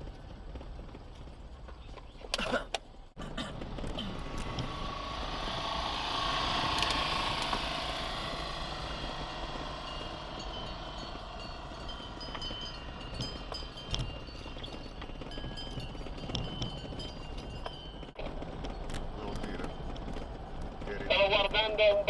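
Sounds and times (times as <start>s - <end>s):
vehicle engine rumble: 0.0s - 22.0s
tyre noise: 6.4s - 22.0s.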